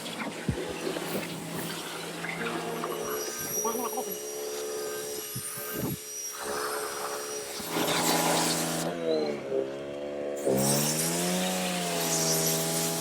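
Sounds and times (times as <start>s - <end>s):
pressure washer spray hissing: 6.3s - 8.9s, 10.5s - 13.0s.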